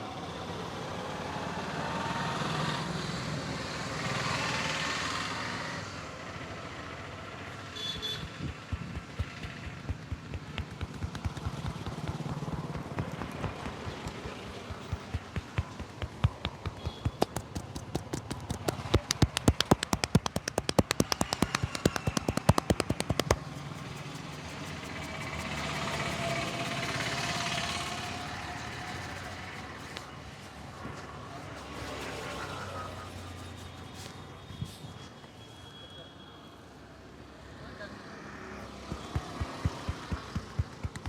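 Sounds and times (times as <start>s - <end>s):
hands slapping scalp: 7.8s - 27.6s, 38.9s - 41.0s.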